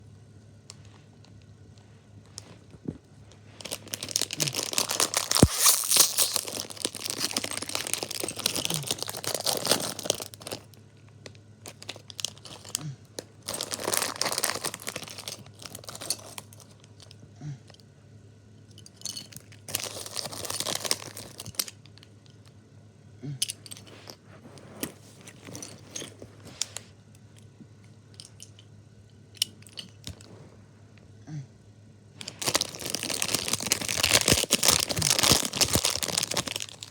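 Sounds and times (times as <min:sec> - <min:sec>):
plastic bag tearing and crinkling: 0:03.6 - 0:10.7, 0:13.4 - 0:16.4, 0:19.7 - 0:21.7, 0:32.2 - 0:36.9.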